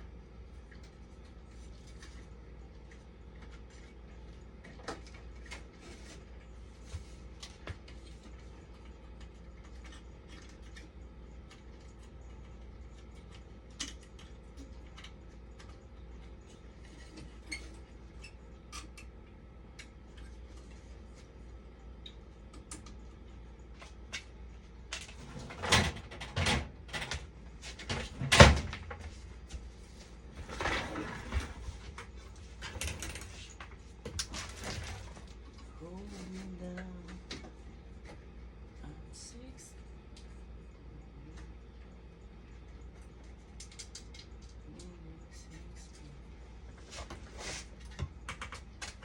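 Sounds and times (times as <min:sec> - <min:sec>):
faint low hum: 0:00.0 - 0:49.0.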